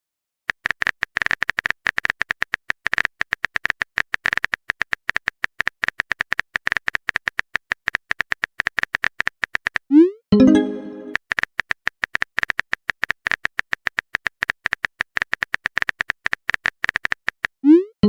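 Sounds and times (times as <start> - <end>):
phone keyboard typing clicks: 10.6 - 17.5.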